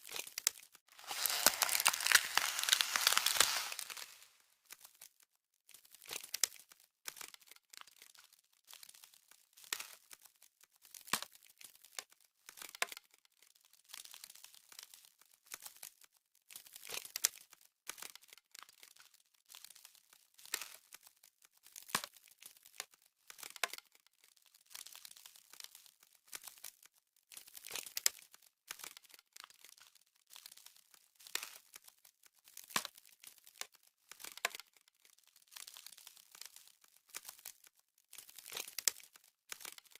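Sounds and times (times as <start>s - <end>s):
ice crackling and crunching: 0.0s - 5.0s, 24.4s - 39.9s.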